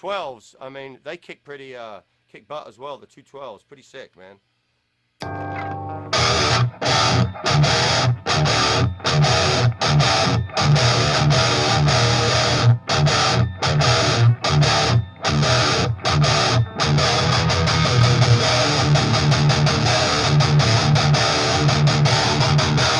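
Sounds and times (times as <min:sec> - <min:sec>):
distorted electric guitar riff: 0:05.2 - 0:22.9.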